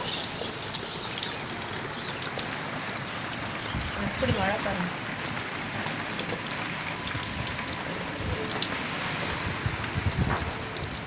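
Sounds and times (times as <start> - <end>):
heavy rain: 0.0 - 11.0
wind gusts: 6.4 - 11.0.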